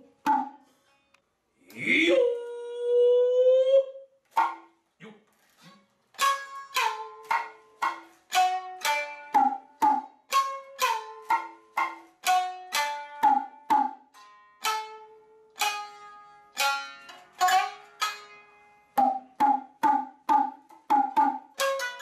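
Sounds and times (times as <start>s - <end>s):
shamisen plucked melody: 0.0s - 0.6s, 6.2s - 22.0s.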